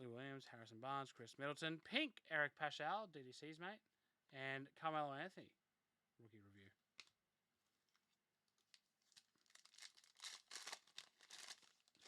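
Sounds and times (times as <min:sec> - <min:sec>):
foil wrapper tearing and crinkling: 0:08.6 - 0:12.0.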